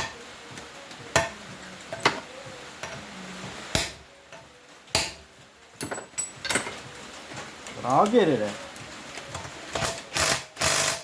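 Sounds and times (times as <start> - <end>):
wrench clicking on metal: 9.7 - 11.0.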